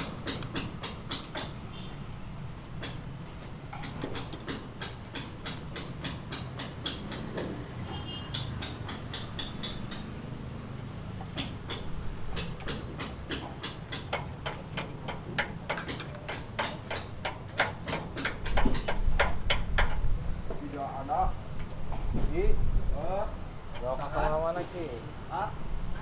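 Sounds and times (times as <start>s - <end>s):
rapid sharp clicks: 0.0s - 1.5s, 11.4s - 20.0s.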